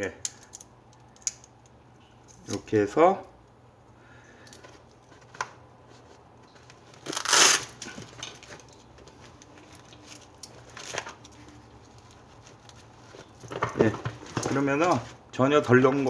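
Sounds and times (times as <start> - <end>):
fabric rustling: 4.6 - 16.0.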